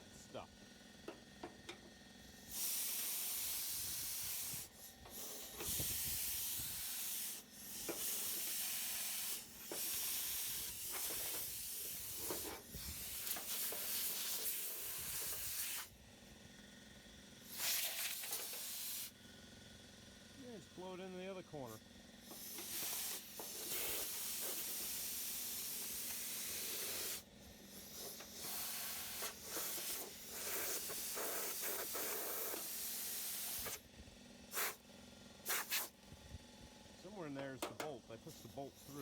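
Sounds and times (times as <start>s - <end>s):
long hissing bursts: 2.3s - 16.0s, 17.4s - 19.2s, 22.2s - 33.8s, 34.5s - 34.8s, 35.4s - 35.9s.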